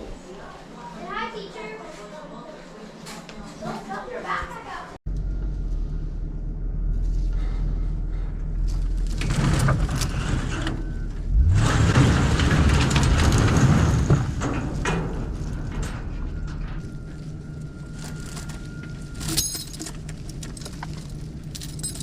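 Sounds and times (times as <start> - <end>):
rattles and sharp knocks: 8.7 - 17.2.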